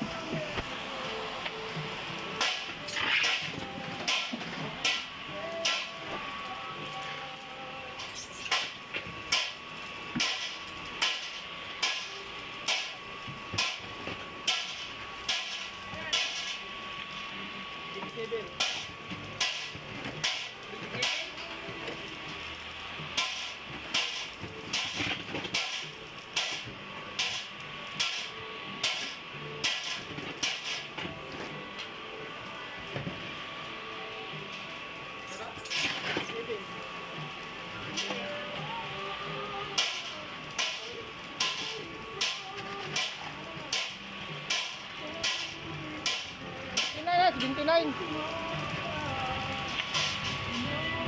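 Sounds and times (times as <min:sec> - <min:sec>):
mortar mixer humming: 0:00.0 - 0:04.0.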